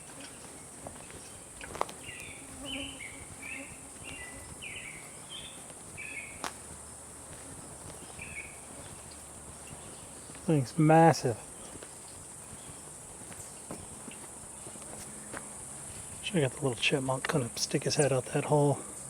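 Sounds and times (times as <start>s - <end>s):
short chirping calls: 8.0s - 10.6s.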